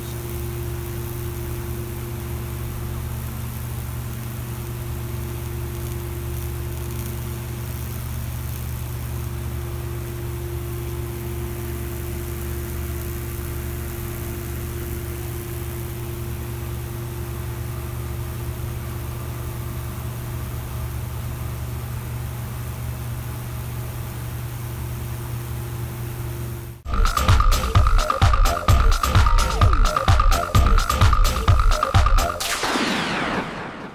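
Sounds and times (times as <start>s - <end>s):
hissing sizzle of burning wood: 0.0s - 15.9s
transformer electrical hum: 0.0s - 33.9s.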